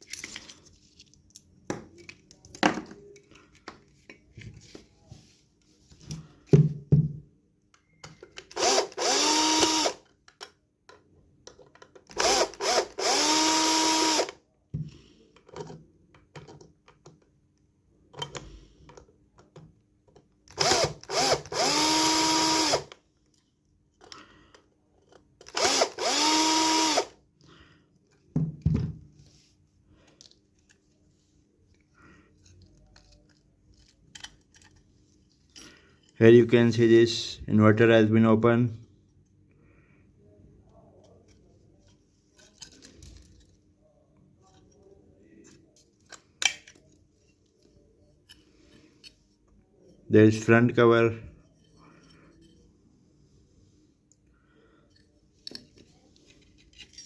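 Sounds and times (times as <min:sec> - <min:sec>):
power drill spinning up: 0:08.5 - 0:10.0, 0:12.1 - 0:14.4, 0:20.5 - 0:23.0, 0:25.4 - 0:27.2
small clicks and handling knocks: 0:10.0 - 0:12.1, 0:15.3 - 0:20.5, 0:31.7 - 0:34.9.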